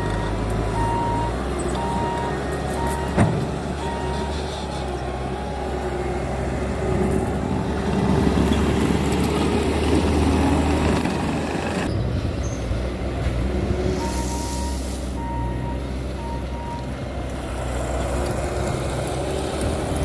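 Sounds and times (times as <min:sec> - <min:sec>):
track loader diesel engine: 0:00.0 - 0:20.0.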